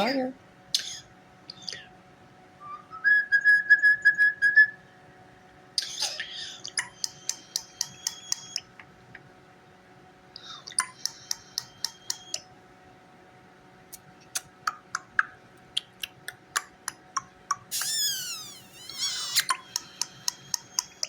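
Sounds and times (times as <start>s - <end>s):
falling whistles: 2.6s - 4.8s, 17.7s - 19.4s
thin steady whistle: 2.6s - 4.8s
starling kissing smacks: 17.7s - 20.7s.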